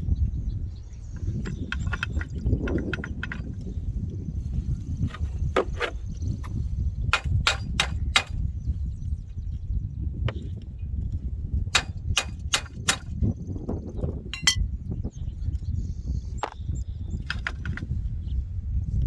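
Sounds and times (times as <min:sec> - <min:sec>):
hammer striking steel: 0:11.8 - 0:13.1, 0:14.4 - 0:14.6
ringing metal clang: 0:14.3 - 0:14.6.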